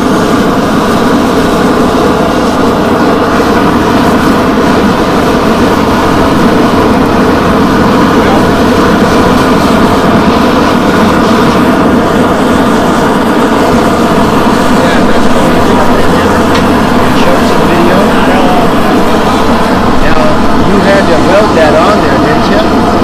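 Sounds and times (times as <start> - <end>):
forge roaring: 0.0 - 23.0.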